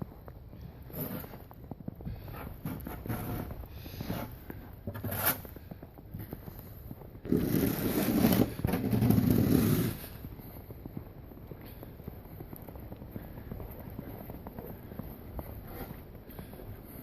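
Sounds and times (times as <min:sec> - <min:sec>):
rough scraping: 0:00.9 - 0:01.5, 0:02.2 - 0:05.6, 0:07.2 - 0:10.2.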